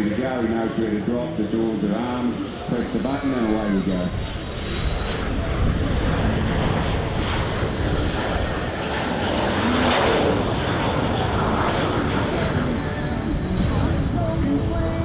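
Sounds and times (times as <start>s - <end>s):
air tanker engines passing low: 0.0s - 15.0s.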